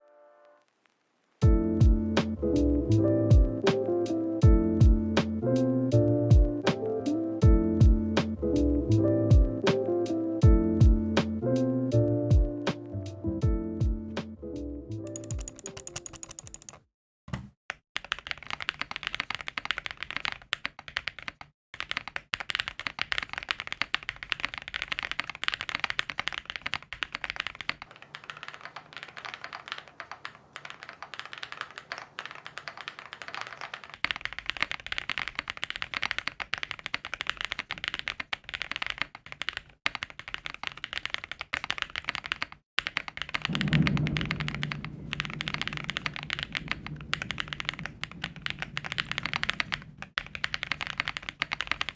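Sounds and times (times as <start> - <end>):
mechanical keyboard typing: 15.1 - 51.9.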